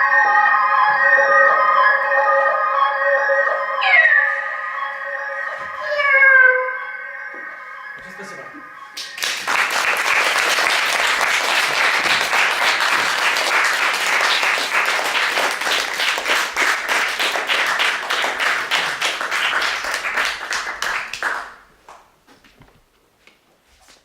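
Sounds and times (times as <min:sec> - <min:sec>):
audience applauding: 0:09.0 - 0:22.0.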